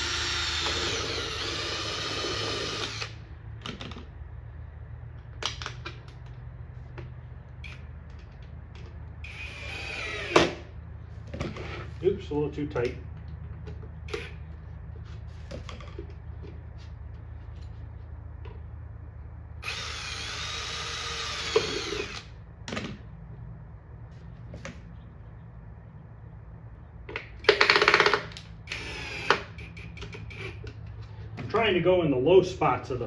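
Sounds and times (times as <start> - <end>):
power drill running: 0.0 - 3.2, 9.2 - 10.5, 19.6 - 22.3, 28.7 - 29.8.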